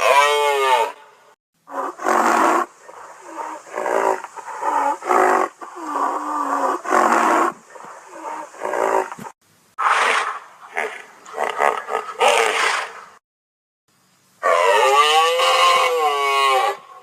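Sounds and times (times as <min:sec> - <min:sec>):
creature calls: 0:14.4 - 0:17.0.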